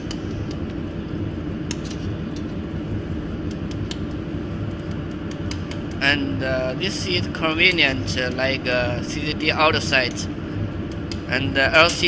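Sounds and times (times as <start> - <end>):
light clicks: 3.4 - 6.0.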